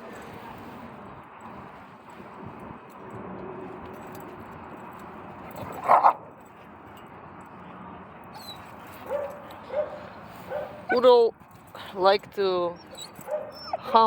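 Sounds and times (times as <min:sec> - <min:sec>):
dog barking: 0:09.1 - 0:10.8, 0:13.3 - 0:13.6.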